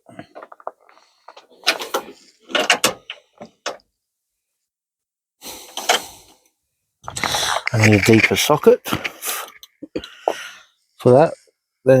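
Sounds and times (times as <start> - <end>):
hand tools clinking and knocking: 0.2 - 3.2, 7.1 - 8.7.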